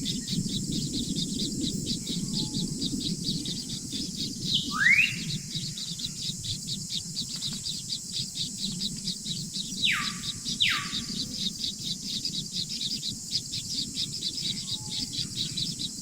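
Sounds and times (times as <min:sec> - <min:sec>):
birds chirping: 0:00.0 - 0:16.0
bird rising and falling calls: 0:04.5 - 0:06.2, 0:09.8 - 0:12.4.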